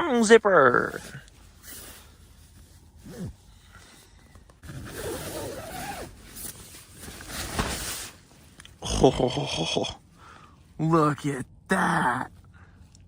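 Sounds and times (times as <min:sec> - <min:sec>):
zipper being pulled open: 0:03.0 - 0:03.4, 0:04.6 - 0:08.0.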